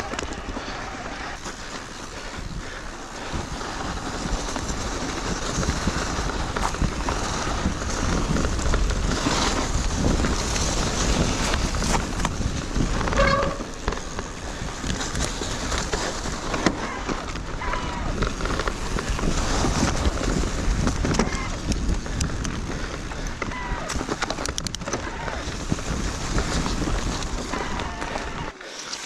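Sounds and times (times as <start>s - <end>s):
wind noise on microphone: 0.0s - 28.5s
bike knocking and rattling: 0.0s - 29.0s
brief tone: 13.1s - 13.6s.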